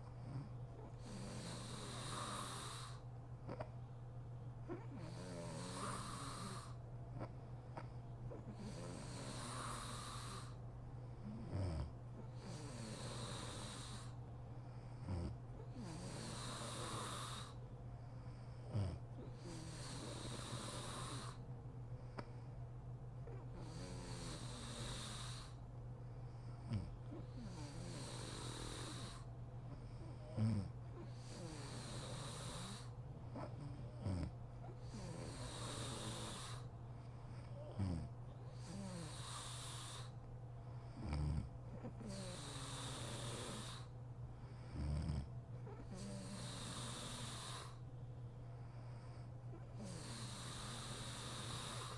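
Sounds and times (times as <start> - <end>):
woman snoring: 0.0 - 3.0, 4.7 - 6.8, 8.4 - 10.6, 11.2 - 14.2, 15.0 - 17.6, 18.7 - 21.4, 23.3 - 25.6, 26.6 - 29.3, 30.0 - 36.7, 37.4 - 40.2, 41.0 - 43.9, 44.6 - 47.8, 49.6 - 51.9.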